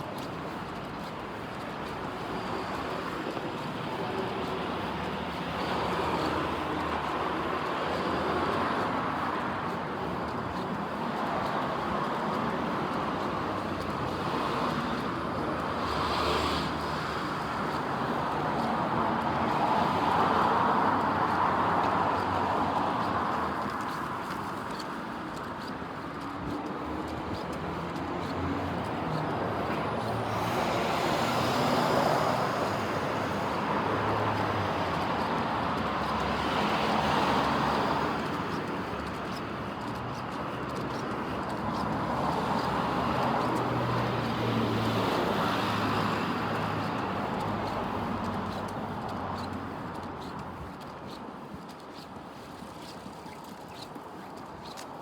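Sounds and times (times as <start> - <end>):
traffic hum: 0.0 - 55.0
vehicles passing: 0.0 - 55.0.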